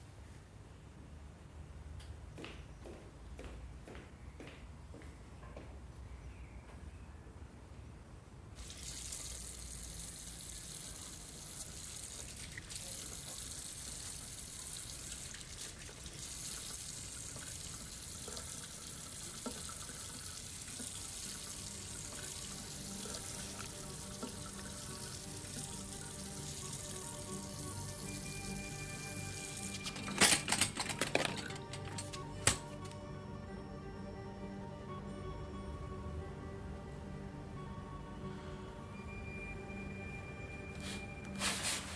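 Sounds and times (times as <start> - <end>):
tap water running into sink: 8.6 - 28.0
sustained music notes: 21.6 - 41.9.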